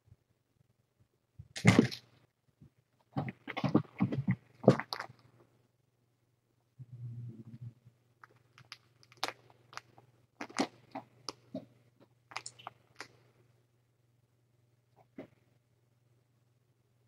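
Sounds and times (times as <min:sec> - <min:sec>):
kitten crunching food: 0:03.2 - 0:05.3, 0:08.2 - 0:11.6, 0:12.3 - 0:13.2.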